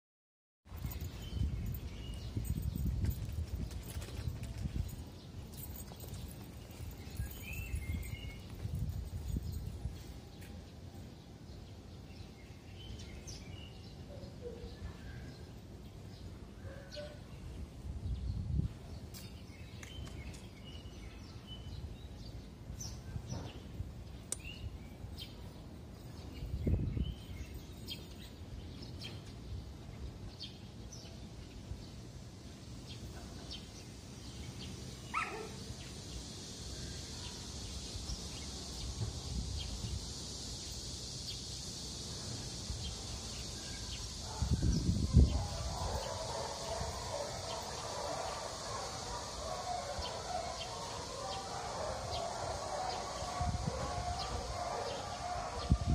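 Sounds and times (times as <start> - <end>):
high-pitched hiss: 31.8 - 55.8.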